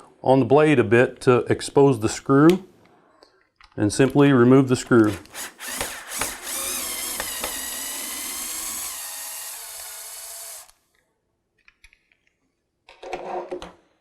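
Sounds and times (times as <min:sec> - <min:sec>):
cordless drill motor whine: 0:05.1 - 0:10.8.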